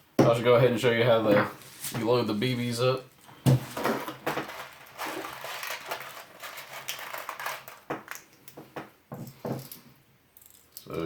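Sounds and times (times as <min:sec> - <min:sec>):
plastic pellets clicking and rattling: 0:03.8 - 0:08.6.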